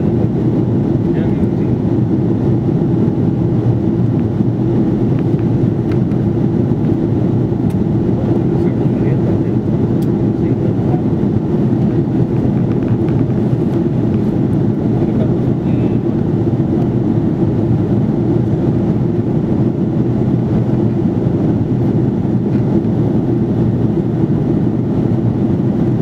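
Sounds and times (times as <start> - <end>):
airplane cabin noise: 0.0 - 26.0.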